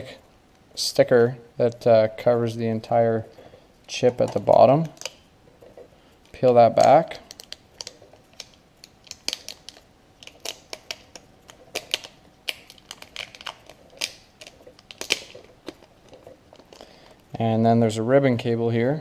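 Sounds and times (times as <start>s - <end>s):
sticker peeling crackles: 3.4s - 17.3s.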